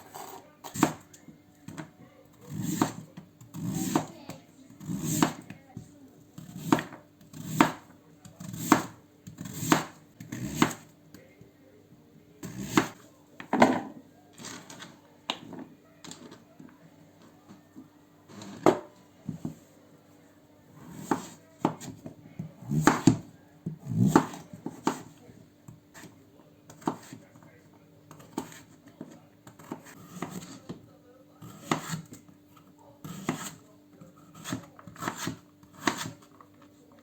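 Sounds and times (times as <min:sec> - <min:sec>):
knife chopping on cutting board: 0:00.2 - 0:01.9, 0:02.5 - 0:04.1, 0:04.8 - 0:05.6, 0:06.4 - 0:10.9, 0:12.4 - 0:15.6, 0:18.3 - 0:19.6, 0:20.7 - 0:26.1, 0:26.7 - 0:27.3, 0:28.1 - 0:30.8, 0:31.4 - 0:32.2, 0:33.0 - 0:33.6, 0:34.2 - 0:36.3.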